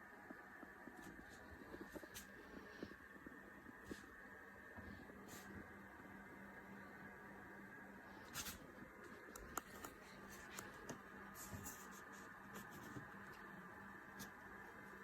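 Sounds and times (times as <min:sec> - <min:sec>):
faint steady hum: 0:00.0 - 0:15.0
light clicks and taps: 0:09.3 - 0:11.0.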